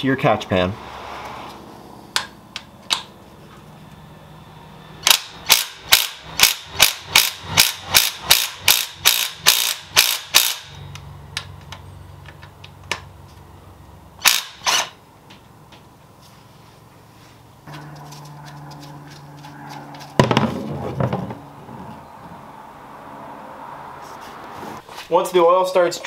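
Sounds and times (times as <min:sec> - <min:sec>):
low hum: 0:00.4 - 0:08.7, 0:14.9 - 0:24.9.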